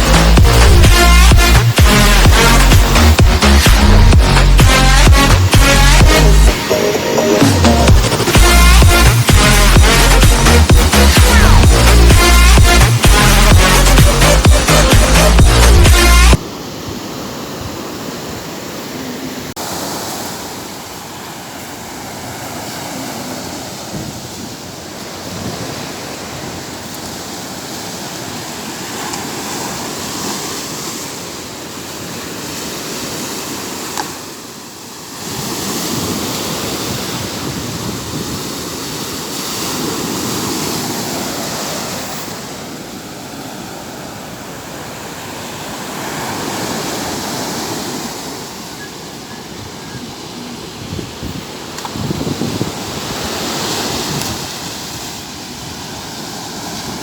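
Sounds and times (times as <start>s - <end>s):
sea waves washing onto beach: 16.4s - 57.0s.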